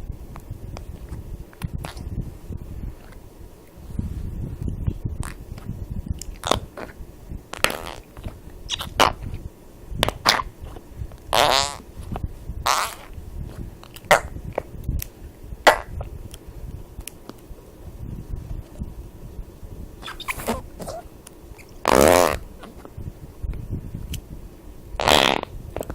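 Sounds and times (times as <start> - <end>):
fart sounds: 7.6 - 8.1, 8.7 - 9.3, 10.0 - 10.5, 11.3 - 11.8, 12.6 - 13.1, 15.7 - 16.0, 20.0 - 21.1, 21.8 - 22.8, 25.0 - 25.9.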